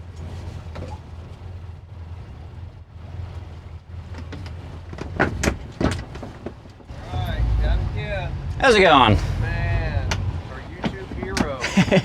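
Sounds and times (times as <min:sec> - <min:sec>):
boat engine humming: 0:00.0 - 0:12.0
water: 0:00.0 - 0:12.0
wind: 0:00.0 - 0:12.0
loud sharp sounds: 0:06.9 - 0:10.5.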